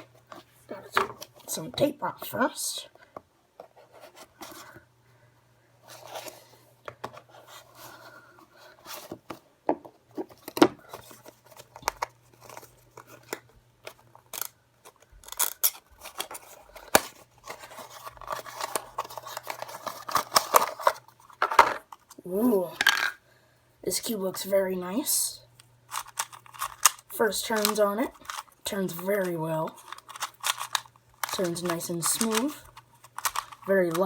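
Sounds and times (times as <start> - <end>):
packaging rustling: 10.2 - 22.2, 25.9 - 34.0.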